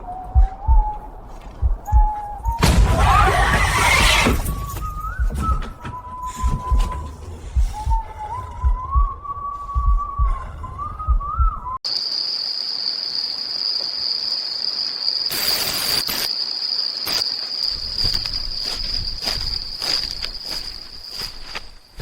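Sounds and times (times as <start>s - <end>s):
low thumps: 1.6s - 11.8s
insects trilling: 11.8s - 22.0s.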